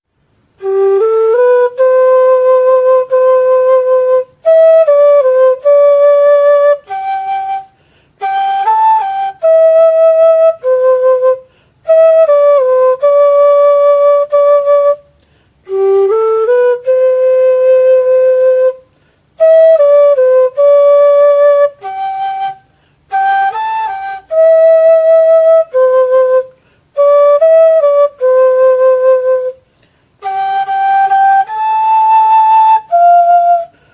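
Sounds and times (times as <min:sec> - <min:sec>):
pipe flute playing slow melody: 0:00.4 - 0:33.9
player breathing: 0:07.7 - 0:08.2.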